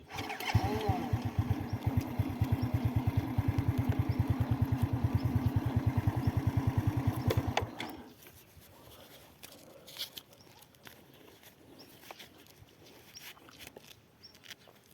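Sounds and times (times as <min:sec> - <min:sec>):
motorcycle engine idling: 0:00.0 - 0:08.1.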